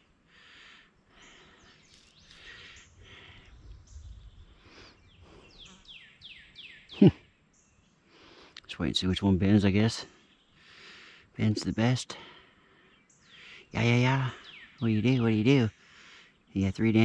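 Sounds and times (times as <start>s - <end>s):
wind rumbling on microphone: 2.8s - 6.0s.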